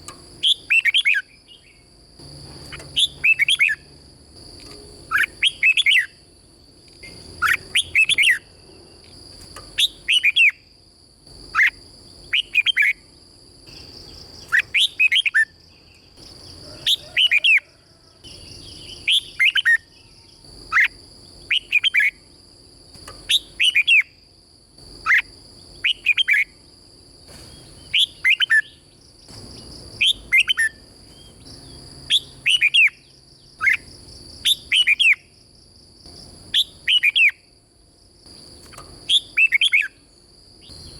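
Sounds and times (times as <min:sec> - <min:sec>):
bird singing whistled phrases: 0:00.4 - 0:01.8, 0:02.9 - 0:03.8, 0:05.1 - 0:06.2, 0:07.0 - 0:08.4, 0:09.8 - 0:10.6, 0:14.5 - 0:15.5, 0:23.3 - 0:24.2, 0:27.9 - 0:28.8, 0:32.1 - 0:33.0, 0:34.5 - 0:35.2, 0:36.6 - 0:37.4.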